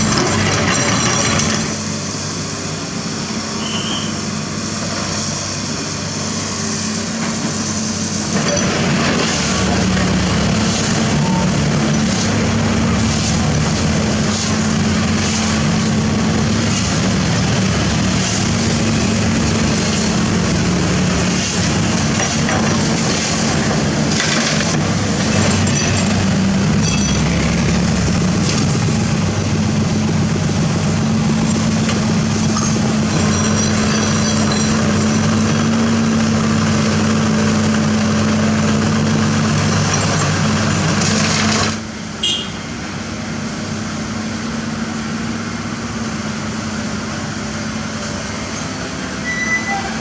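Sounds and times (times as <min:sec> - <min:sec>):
excavator diesel engine running: 0:00.0 - 0:50.0.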